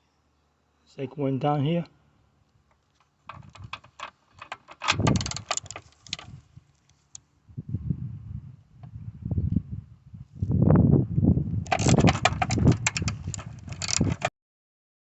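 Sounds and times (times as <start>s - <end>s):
ratchet clicking and rattling: 3.3s - 6.4s, 11.7s - 14.3s.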